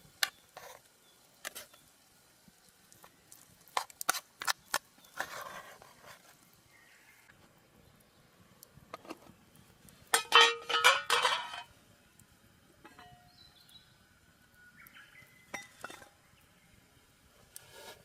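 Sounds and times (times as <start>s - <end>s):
camp tableware clinking: 10.1s - 11.7s, 12.8s - 13.3s, 15.5s - 16.2s.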